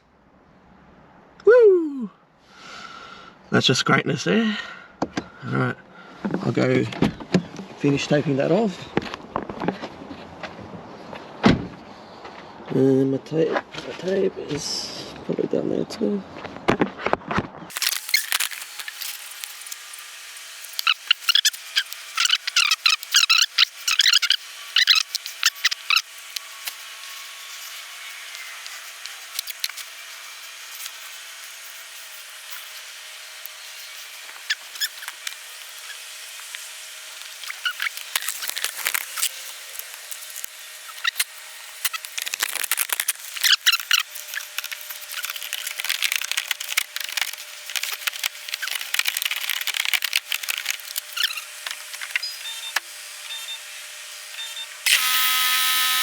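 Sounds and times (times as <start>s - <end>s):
electrical tape crinkling and tearing: 17.7s - 52.8s.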